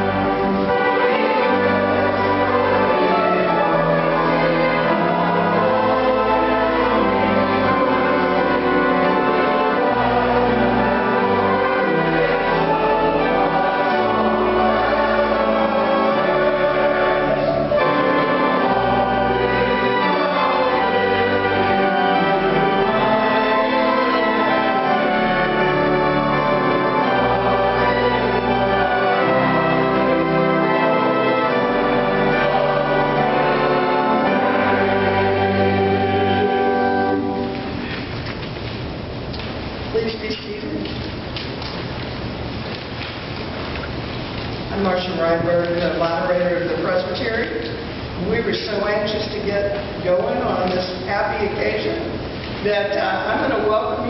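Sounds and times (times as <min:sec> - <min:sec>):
organ chords: 0:00.0 - 0:41.8.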